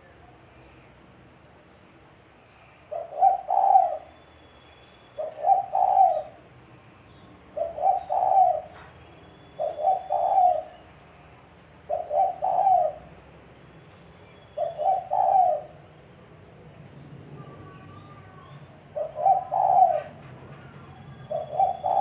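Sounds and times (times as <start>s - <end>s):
dove cooing: 2.9s - 4.1s, 5.2s - 6.4s, 7.6s - 8.8s, 9.6s - 10.9s, 11.9s - 13.1s, 14.6s - 15.8s, 17.8s - 22.0s.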